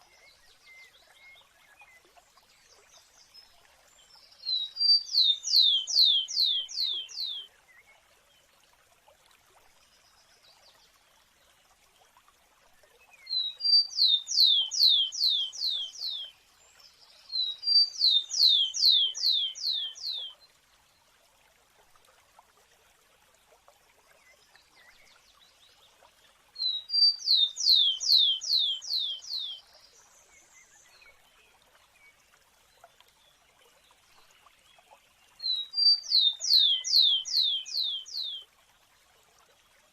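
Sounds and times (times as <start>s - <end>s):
sparrow singing: 35.5s - 38.4s.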